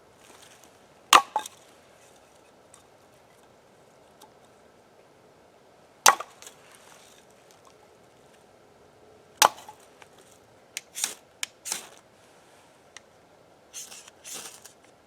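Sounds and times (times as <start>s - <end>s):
axe striking wood: 1.2s - 1.5s, 6.1s - 6.4s, 9.4s - 9.8s.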